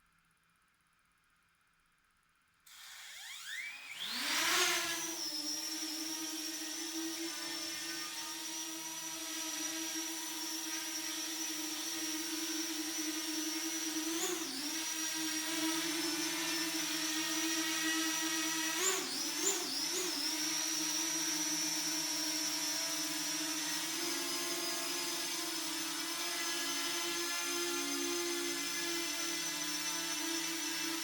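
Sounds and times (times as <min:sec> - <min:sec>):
drone propellers whining: 0:02.8 - 0:15.0.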